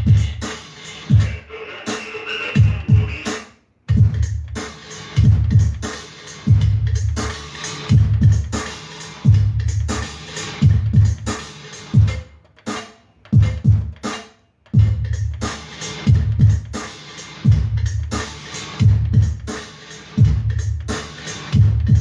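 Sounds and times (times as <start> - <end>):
electronic dance beat: 0.0 - 14.2, 14.8 - 22.0.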